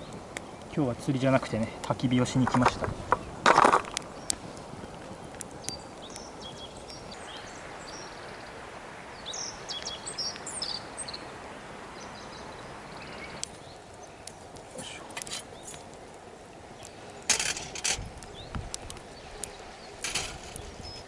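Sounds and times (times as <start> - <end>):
small bird chirping: 5.6 - 8.5, 9.2 - 11.3.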